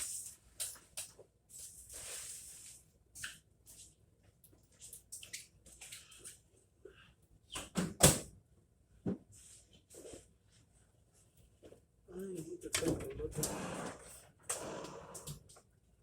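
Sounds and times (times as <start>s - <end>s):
handling rustles and scrapes: 1.5s - 2.9s.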